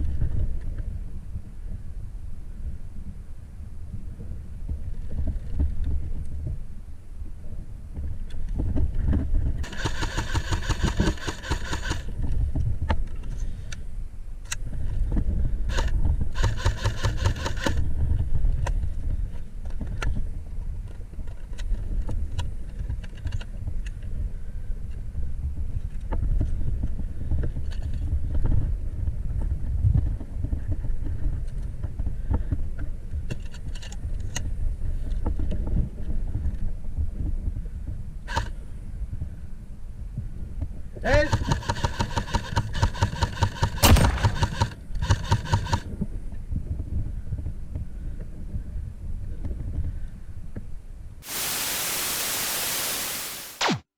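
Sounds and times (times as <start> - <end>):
low rumble of wind: 0.0 - 51.3
airsoft rifle full-auto bursts: 9.6 - 12.1, 15.7 - 17.8, 41.3 - 45.8.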